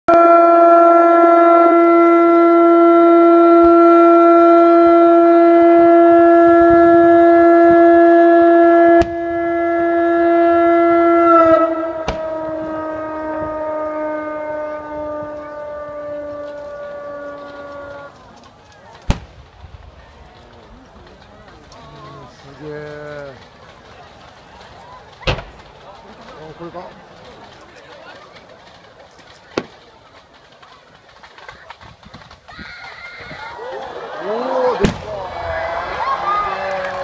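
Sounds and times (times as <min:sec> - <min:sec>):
siren wailing: 0:08.9 - 0:18.2.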